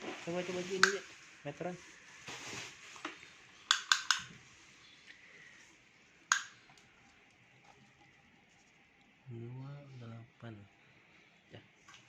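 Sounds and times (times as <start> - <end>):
tape measure metallic clicks: 3.7 - 4.3.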